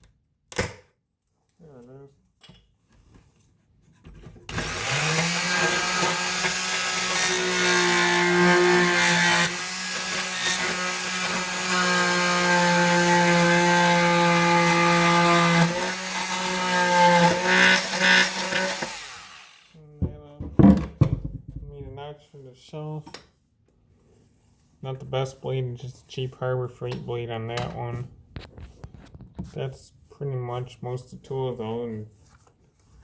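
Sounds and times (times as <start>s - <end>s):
oscillating saw cutting plywood: 4.5s - 19.7s.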